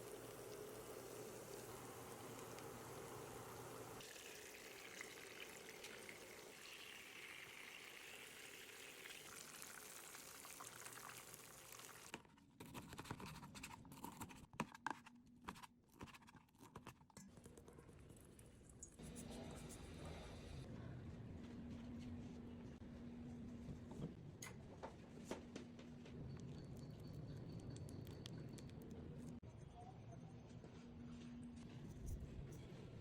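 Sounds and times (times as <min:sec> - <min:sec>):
food sizzling in a pan: 0:00.0 - 0:12.1.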